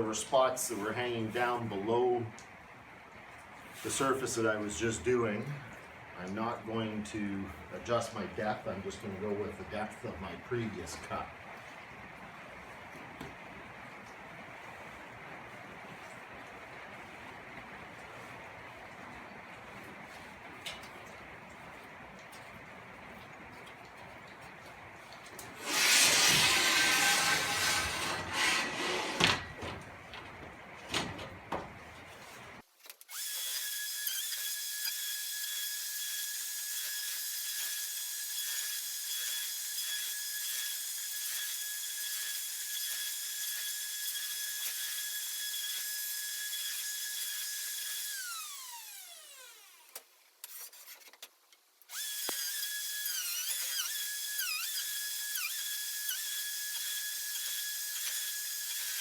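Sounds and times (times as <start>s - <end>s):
router cutting wood: 25.6s - 29.6s, 33.1s - 50.0s, 51.9s - 59.0s.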